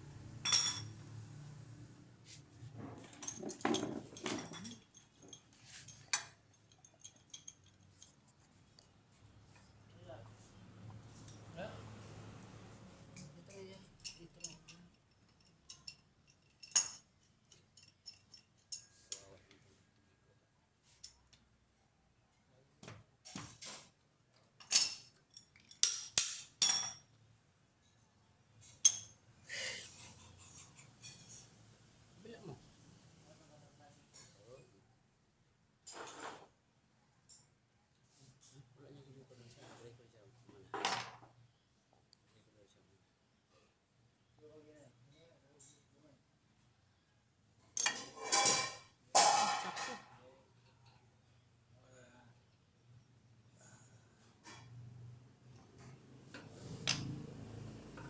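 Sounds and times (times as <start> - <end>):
metal tools clinking: 0.5 - 0.9, 3.0 - 8.2, 14.0 - 19.3
metal tools clanking: 3.0 - 8.1.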